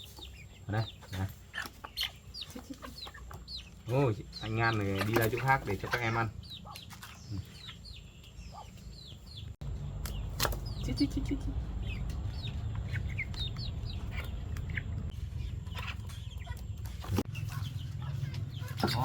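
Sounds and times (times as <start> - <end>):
chickens peeping and clucking: 0.0 - 19.0
steady low rumble: 9.6 - 16.8.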